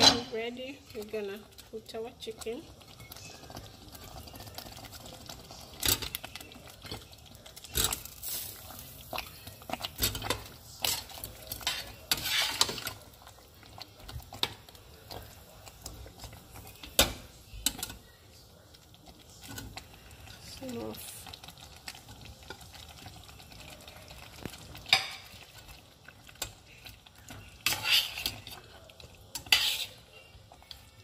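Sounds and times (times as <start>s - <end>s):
utensil knocking and scraping pot: 3.2s - 13.1s, 23.9s - 25.8s, 26.4s - 30.9s.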